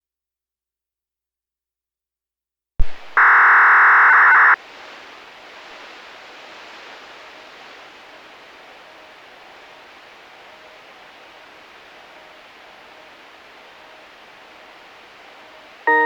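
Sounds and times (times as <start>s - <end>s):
radio click: 2.8s - 4.6s
radio channel hiss: 2.8s - 16.0s.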